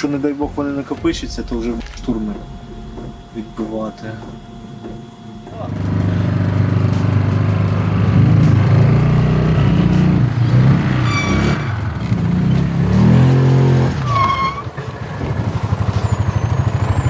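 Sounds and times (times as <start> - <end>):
buggy engine revving: 5.6 - 17.0
brief high squeals: 11.0 - 11.9, 14.0 - 14.7.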